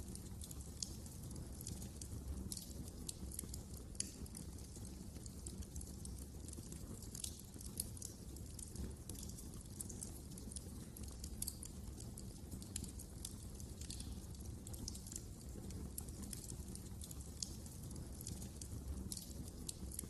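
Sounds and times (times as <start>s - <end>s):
wood fire crackling: 0.0s - 20.0s.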